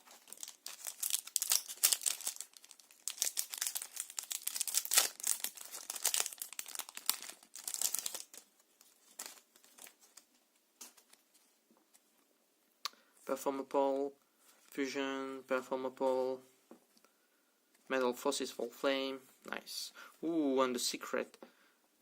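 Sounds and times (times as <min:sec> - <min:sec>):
foil wrapper tearing and crinkling: 0:00.0 - 0:10.2.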